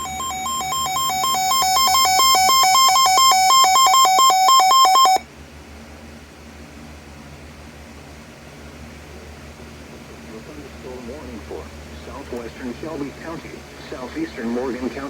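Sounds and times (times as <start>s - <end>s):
buzzy two-pitch alert beeping: 0.0s - 5.2s.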